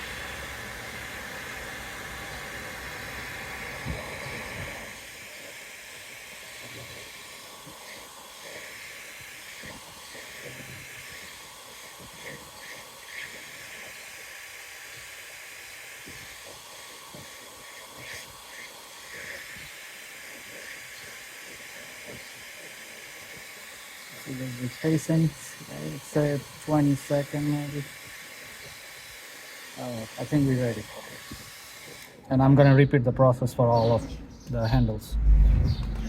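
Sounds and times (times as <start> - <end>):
hot-air blower hissing: 0.0 - 32.3
low rumble: 34.1 - 36.0.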